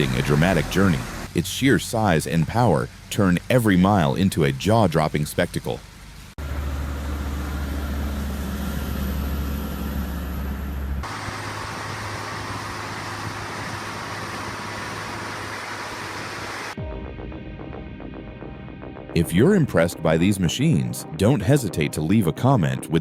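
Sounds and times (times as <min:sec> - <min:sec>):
road noise: 0:00.0 - 0:16.8
truck engine: 0:00.0 - 0:16.8.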